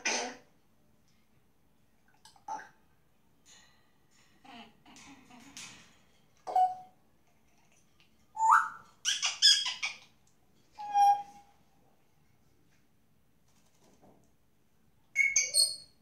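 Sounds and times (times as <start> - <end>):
parrot shrill chirps: 8.4 - 10.0, 10.8 - 11.4, 15.2 - 16.0
parrot whistling and calling: 8.4 - 10.0, 10.8 - 11.4, 15.2 - 16.0.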